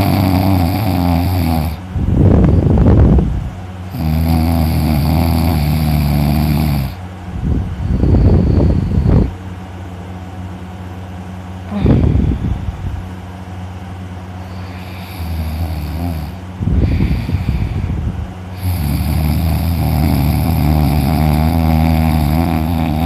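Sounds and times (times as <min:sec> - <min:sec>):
loud snort: 0:00.0 - 0:01.8, 0:03.9 - 0:07.0, 0:14.5 - 0:17.8, 0:18.6 - 0:23.0
person snoring loudly: 0:00.0 - 0:01.8, 0:03.9 - 0:07.0, 0:11.7 - 0:12.4, 0:14.4 - 0:23.0.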